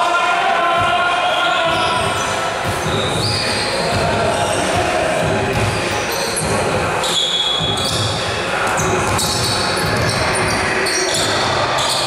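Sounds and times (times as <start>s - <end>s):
basketball dribbling on gym floor: 2.6s - 5.8s.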